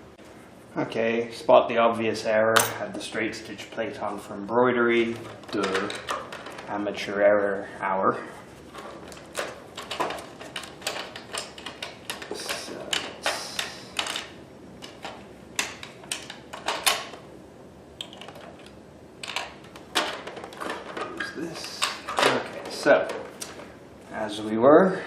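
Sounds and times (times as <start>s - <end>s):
small parts clicking and clacking: 9.0s - 17.2s, 18.0s - 23.6s.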